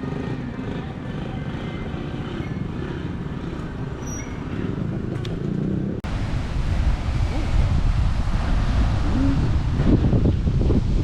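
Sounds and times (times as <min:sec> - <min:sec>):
road traffic passing: 0:00.0 - 0:11.0
wind buffeting microphone: 0:06.0 - 0:11.0.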